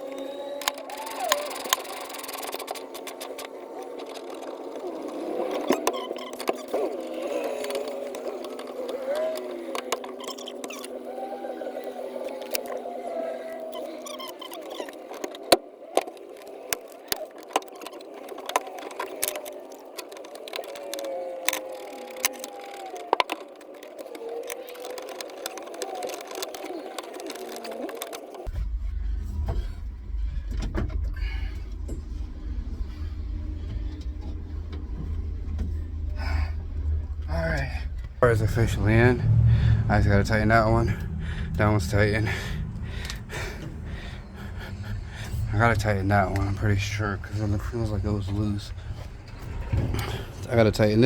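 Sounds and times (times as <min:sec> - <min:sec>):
steady background hum: 0:28.4 - 0:51.0
steady low rumble: 0:28.5 - 0:51.0.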